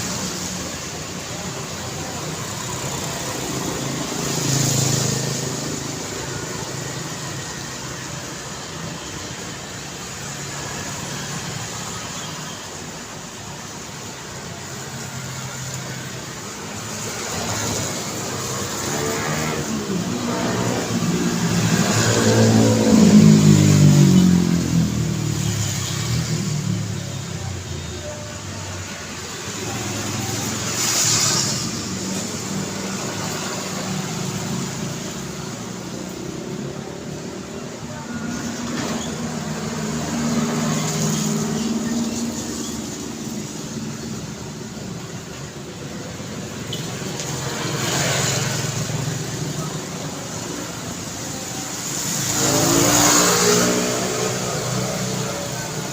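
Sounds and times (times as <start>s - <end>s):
cars and motorbikes passing: 0.0s - 55.9s
traffic engines humming: 0.0s - 55.9s
vehicle passing close: 51.0s - 55.9s.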